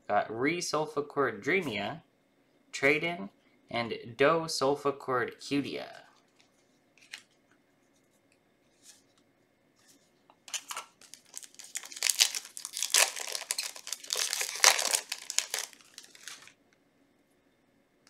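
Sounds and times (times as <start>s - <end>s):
foil wrapper tearing and crinkling: 10.5s - 16.6s.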